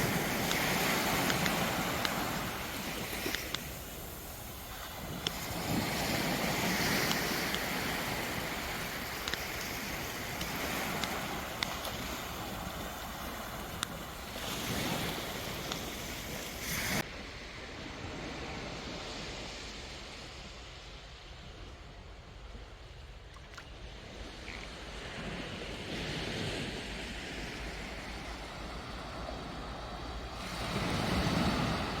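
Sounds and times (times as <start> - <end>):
sea waves washing onto beach: 0.0 - 20.4, 23.9 - 32.0
wind rumble on microphone: 0.0 - 32.0.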